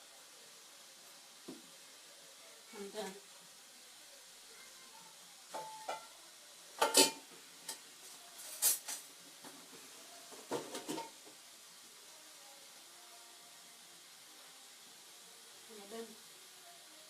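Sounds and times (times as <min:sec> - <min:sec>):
dishes and utensils clattering: 0:05.5 - 0:06.1, 0:06.8 - 0:07.9, 0:10.5 - 0:11.2.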